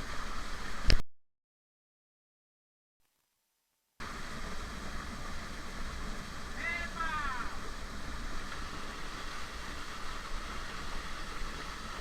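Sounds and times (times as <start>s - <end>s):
waterfall rushing: 4.0s - 12.0s.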